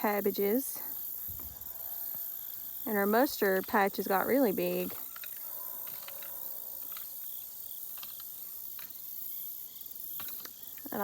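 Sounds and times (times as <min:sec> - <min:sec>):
insects chirring: 0:00.0 - 0:11.0
faint ticks: 0:04.9 - 0:07.3.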